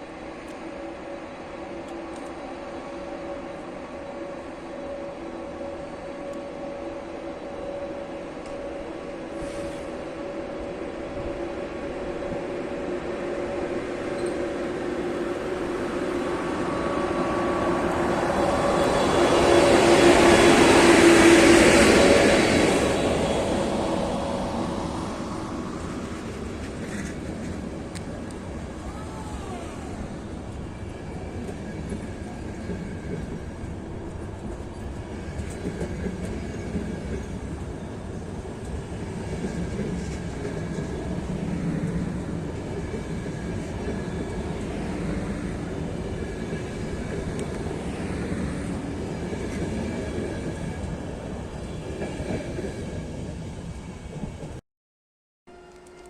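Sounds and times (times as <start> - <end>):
train wheels rumbling on rail: 0.0 - 54.6
clickety-clack of train wheels: 13.9 - 15.8, 17.2 - 54.6.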